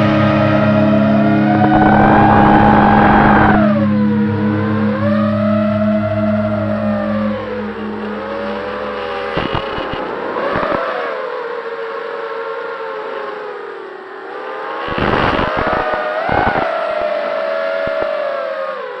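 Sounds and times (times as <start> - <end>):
rushing noise bursts: 0.0 - 11.4
drone motors whining: 0.0 - 19.0.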